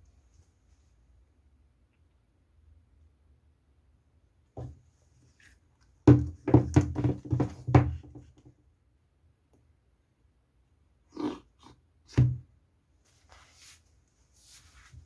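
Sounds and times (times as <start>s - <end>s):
sharp knocks and thumps: 6.1s - 8.3s.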